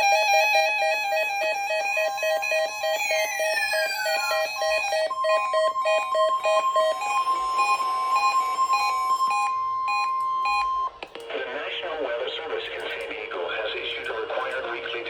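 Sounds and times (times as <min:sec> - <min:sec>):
plinking electronic melody: 0:00.0 - 0:11.3
steady alert tone: 0:01.5 - 0:11.2.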